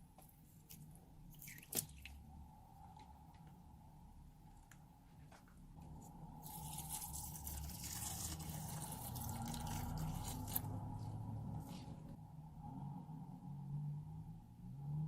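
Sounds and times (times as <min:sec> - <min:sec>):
slime squished by hand: 0:00.5 - 0:02.3.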